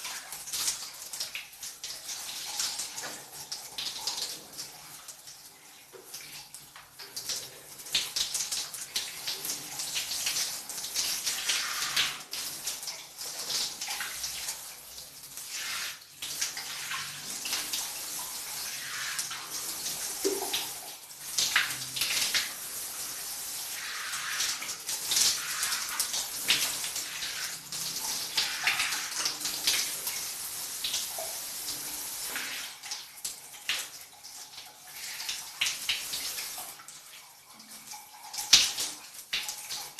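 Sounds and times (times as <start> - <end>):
shower spray splashing: 7.0 - 34.0, 34.8 - 36.9.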